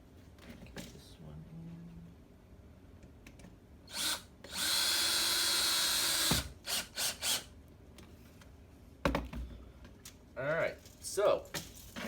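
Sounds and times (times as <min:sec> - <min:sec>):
power drill driving a screw: 0:03.9 - 0:07.5.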